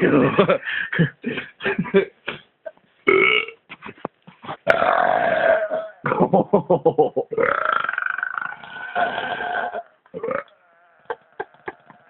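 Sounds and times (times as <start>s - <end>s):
man belching: 3.1s - 3.6s, 4.6s - 6.3s, 7.3s - 11.2s.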